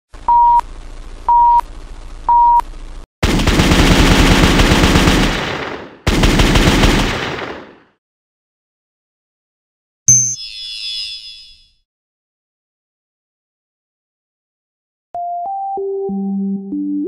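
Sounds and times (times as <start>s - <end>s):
rapid automatic gunfire: 3.2s - 8.0s
short electronic beeps: 10.1s - 11.8s.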